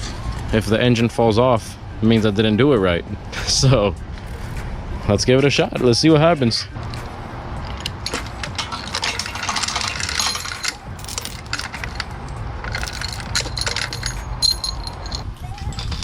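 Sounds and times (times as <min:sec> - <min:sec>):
metallic clinks and rattles: 0:06.9 - 0:16.0.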